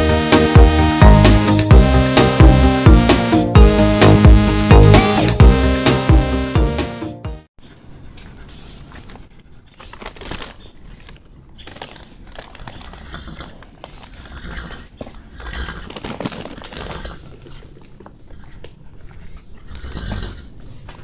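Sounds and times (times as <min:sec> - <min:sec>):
horse chewing: 0:10.8 - 0:21.0.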